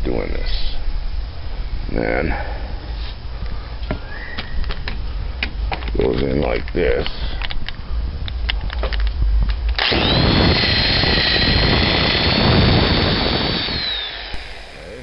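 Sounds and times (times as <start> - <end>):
electric drill boring wood: 9.8 - 15.0.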